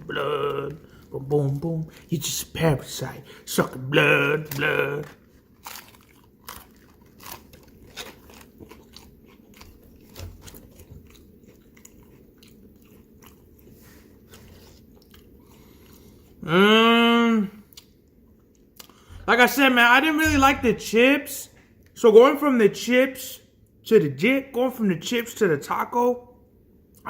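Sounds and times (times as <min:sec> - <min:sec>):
person humming: 0:00.0 - 0:00.9
crunching and chewing taco shell: 0:00.0 - 0:16.4, 0:17.6 - 0:19.3.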